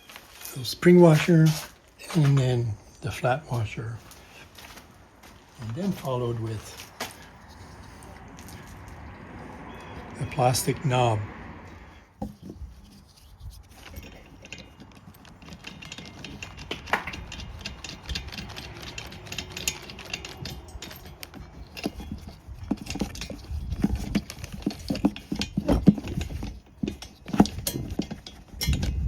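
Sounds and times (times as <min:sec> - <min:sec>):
handling noise: 0:00.0 - 0:29.0
metal hardware clicking and rattling: 0:12.1 - 0:29.0.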